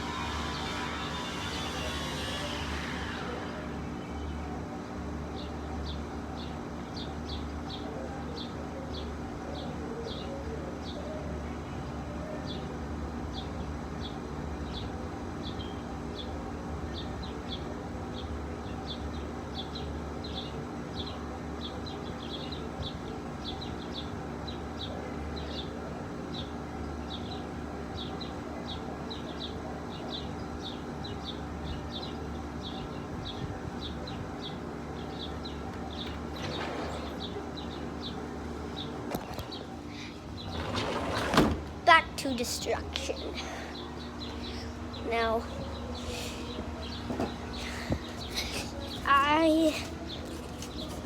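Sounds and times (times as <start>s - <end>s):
low background hum: 0.0s - 51.0s
bird chirping: 42.0s - 51.0s.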